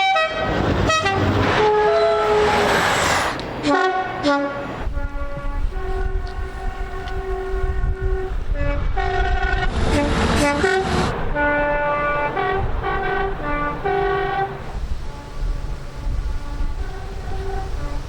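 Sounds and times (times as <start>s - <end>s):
two-tone train horn blasts: 0.0s - 2.6s, 3.6s - 18.0s
running train rumble: 0.0s - 18.0s
loud rushing noise: 0.4s - 4.9s, 9.6s - 13.8s.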